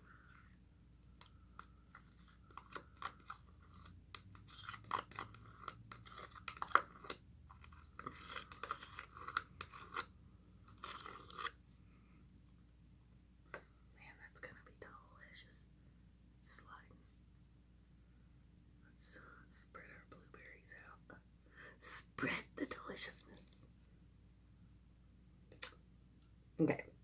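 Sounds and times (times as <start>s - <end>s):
utensil scraping a plate: 2.2s - 11.6s.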